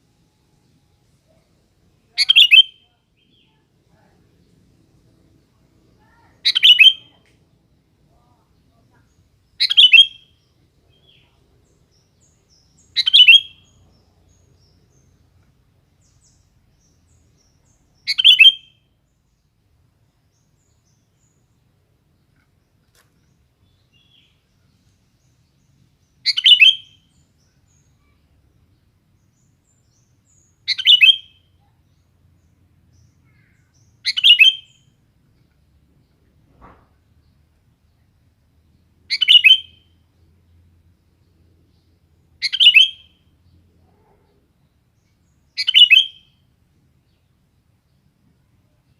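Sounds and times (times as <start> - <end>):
bulbul calling: 2.1 - 3.4, 6.1 - 7.2, 9.6 - 10.4, 12.8 - 13.8, 18.0 - 18.8, 26.2 - 27.1, 30.3 - 31.4, 33.3 - 34.8, 39.1 - 39.9, 42.4 - 43.2, 45.6 - 46.3.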